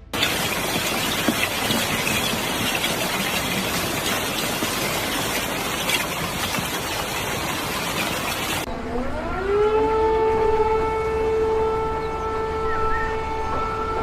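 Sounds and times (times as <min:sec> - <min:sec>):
heavy rain: 0:00.0 - 0:08.7
rushing floodwater: 0:00.0 - 0:08.7.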